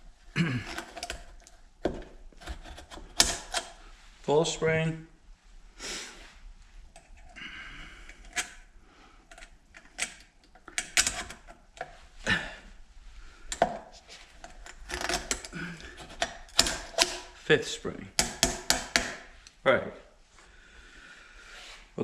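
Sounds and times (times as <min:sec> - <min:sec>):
metal clicking and tapping: 0:18.2 - 0:19.3.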